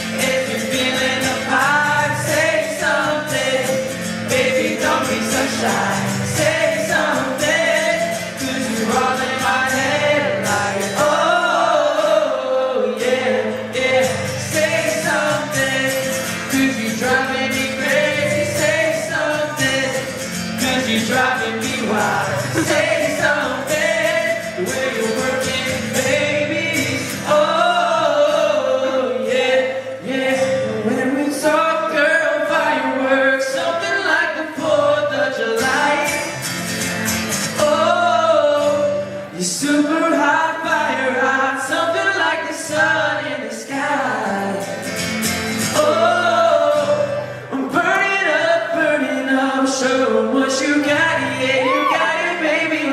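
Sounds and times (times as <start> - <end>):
pop song with live band: 0.0 - 52.9.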